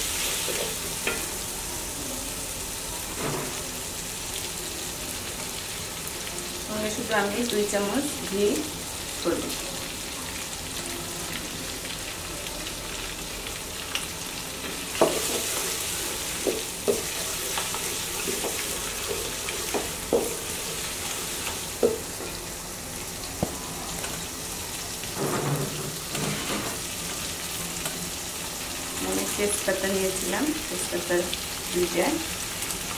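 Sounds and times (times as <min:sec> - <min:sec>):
onions sizzling in a pot: 0:00.0 - 0:32.9.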